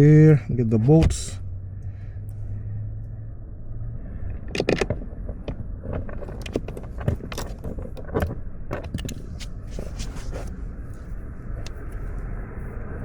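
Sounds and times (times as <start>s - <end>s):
low steady hum: 0.0s - 13.0s
bolts and tools clinking: 4.3s - 10.2s.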